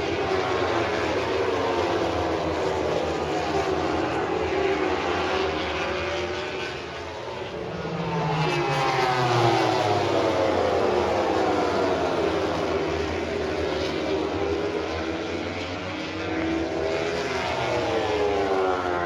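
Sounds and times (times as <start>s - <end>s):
racing motorcycles passing: 0.0s - 19.0s.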